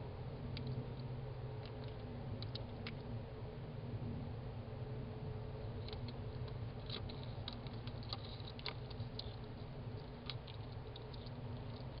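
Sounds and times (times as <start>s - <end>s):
steady low hum: 0.0s - 12.0s
hedgehog clicking: 0.5s - 3.1s, 5.8s - 12.0s.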